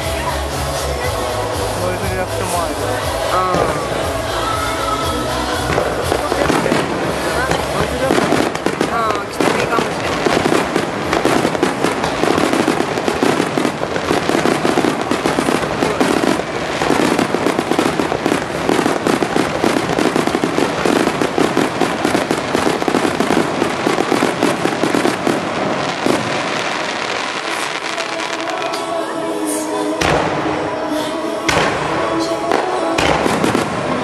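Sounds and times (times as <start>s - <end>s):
fireworks shells bursting: 5.6s - 29.0s.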